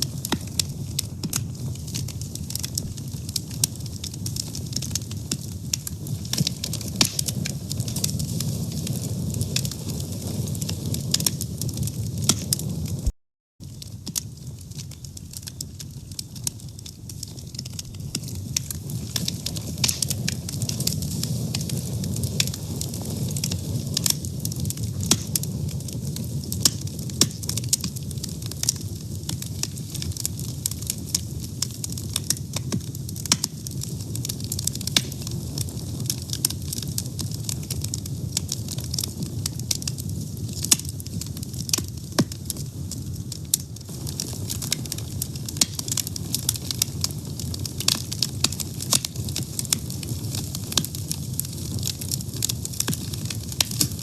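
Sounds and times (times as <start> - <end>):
wood fire crackling and popping: 0.0 - 54.0.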